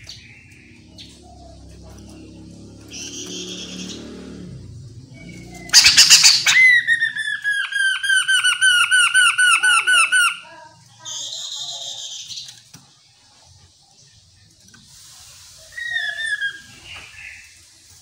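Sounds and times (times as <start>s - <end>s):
bird raspy buzzy call: 0.0s - 12.3s, 15.6s - 17.6s
bird harsh squawk: 2.8s - 4.3s, 5.1s - 12.3s, 15.6s - 17.6s
bird whistled notes: 5.1s - 10.4s, 15.6s - 17.6s.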